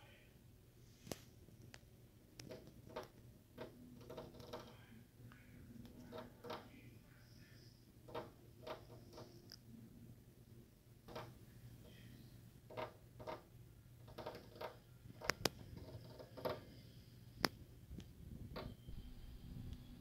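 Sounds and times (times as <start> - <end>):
bird pecking at window glass: 2.4 - 4.8, 5.8 - 6.8, 8.0 - 9.4, 11.0 - 12.0, 12.6 - 16.8.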